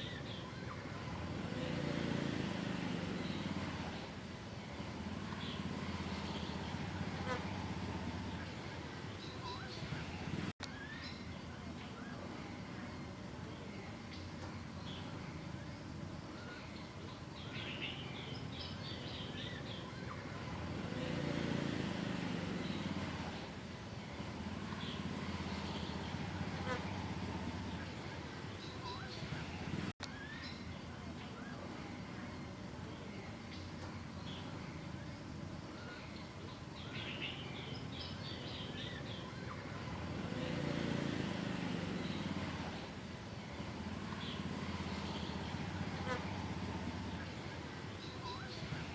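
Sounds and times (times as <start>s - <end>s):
low engine rumble: 0.0s - 48.9s
outdoor background noise: 0.0s - 48.9s.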